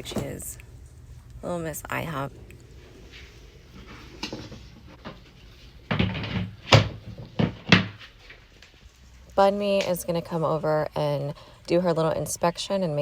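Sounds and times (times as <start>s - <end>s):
knocks and clunks: 3.8s - 8.1s.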